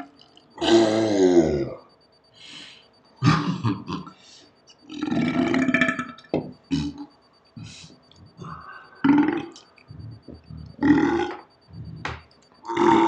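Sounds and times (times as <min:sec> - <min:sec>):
men burping: 0:00.6 - 0:01.8, 0:03.2 - 0:04.2, 0:04.8 - 0:07.1, 0:08.3 - 0:13.0.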